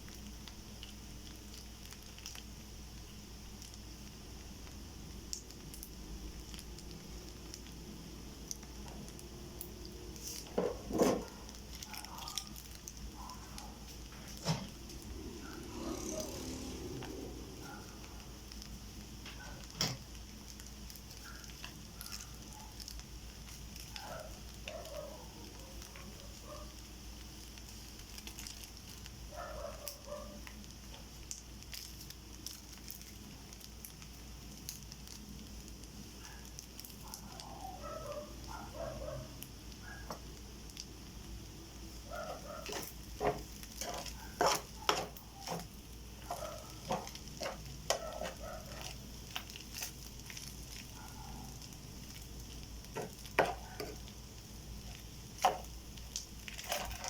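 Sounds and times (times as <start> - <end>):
rice sizzling in a pan: 0.0 - 57.0
spatula scraping a pan: 42.6 - 45.7.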